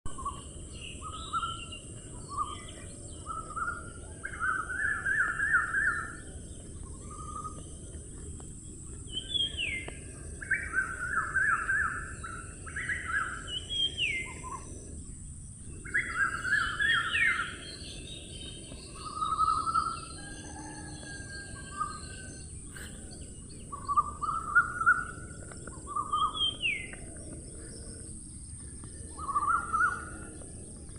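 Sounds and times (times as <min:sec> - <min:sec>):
bird calling: 0:01.0 - 0:07.8, 0:15.8 - 0:30.5
steady high hiss: 0:03.6 - 0:20.1.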